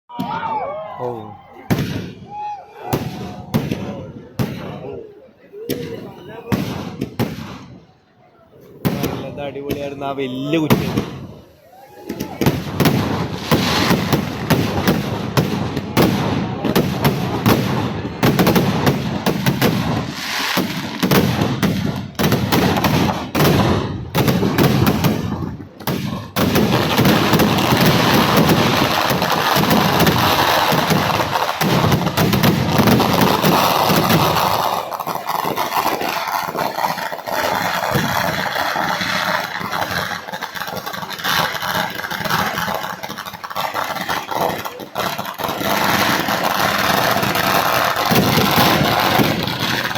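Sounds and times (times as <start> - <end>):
firecracker explosions: 0.1 - 49.9.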